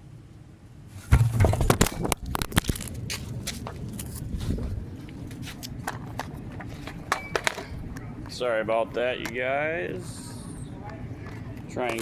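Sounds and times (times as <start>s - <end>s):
handling knocks and rubbing: 0.9s - 7.7s
heavy thump: 1.0s - 2.2s.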